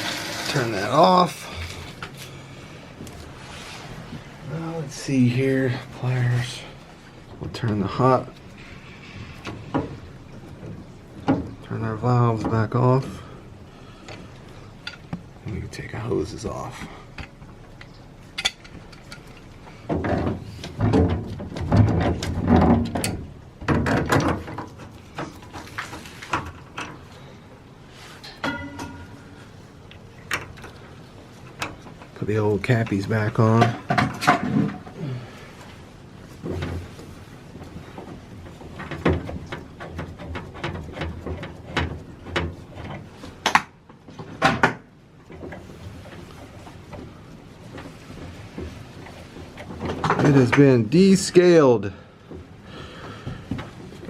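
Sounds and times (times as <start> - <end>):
hoses and fittings rattling: 0.0 - 54.0
small fittings clicking and tapping: 16.8 - 21.4.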